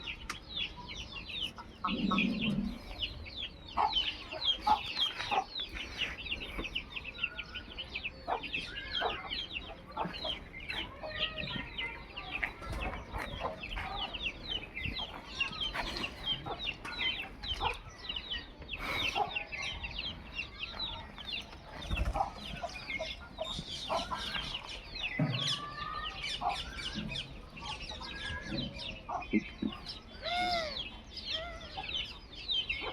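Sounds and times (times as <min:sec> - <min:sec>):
chickens clucking and chirping: 0:00.0 - 0:32.9.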